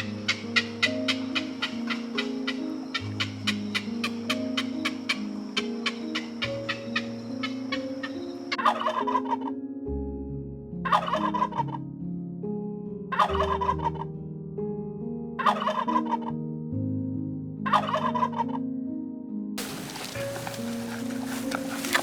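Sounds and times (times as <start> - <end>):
turkey gobbling: 0.0 - 9.4, 10.9 - 11.7, 15.4 - 16.2, 17.7 - 18.5, 19.6 - 22.0.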